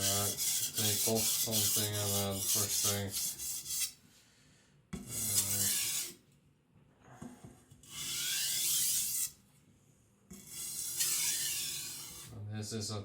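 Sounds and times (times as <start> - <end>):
knife scraping on whetstone: 0.0 - 4.0, 5.0 - 6.2, 7.8 - 9.4, 10.3 - 12.3.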